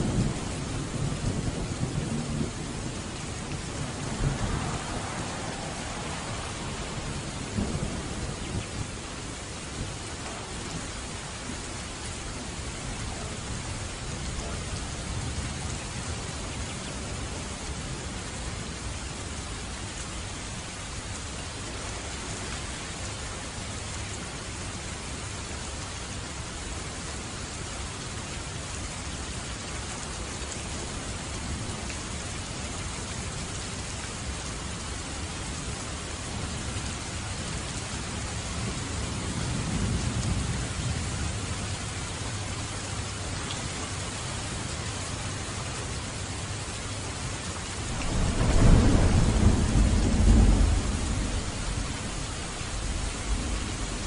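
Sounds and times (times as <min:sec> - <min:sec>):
thunder rumbling: 0:00.0 - 0:11.6, 0:47.8 - 0:54.0
rain falling: 0:00.0 - 0:54.0.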